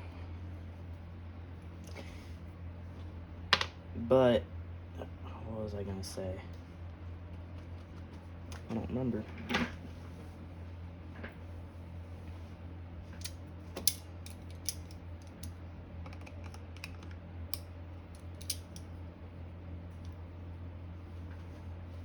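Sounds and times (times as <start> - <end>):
steady low hum: 0.0 - 22.0
metal parts clicking: 13.2 - 15.5, 18.2 - 18.8.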